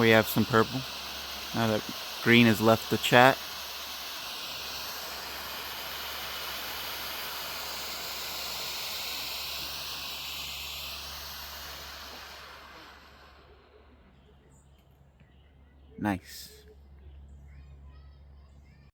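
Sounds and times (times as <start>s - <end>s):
smoke fireworks hissing: 0.0s - 14.5s, 16.1s - 16.6s.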